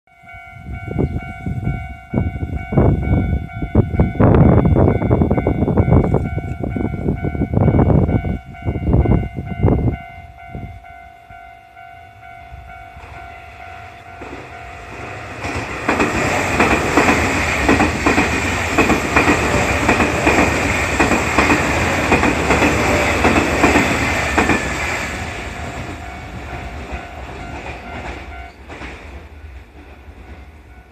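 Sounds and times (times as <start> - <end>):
railroad crossing bells ringing: 0.1 - 30.9
train wheels rattling: 13.8 - 30.9.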